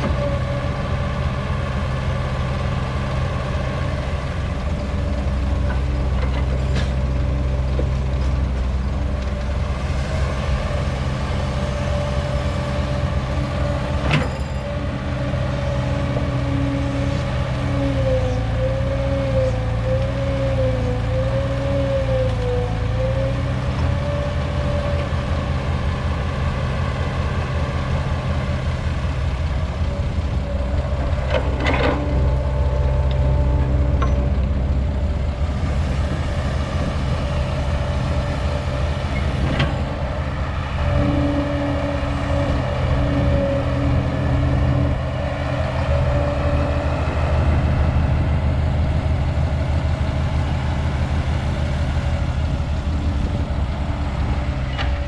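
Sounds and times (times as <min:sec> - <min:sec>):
excavator diesel engine running: 0:00.0 - 0:55.0.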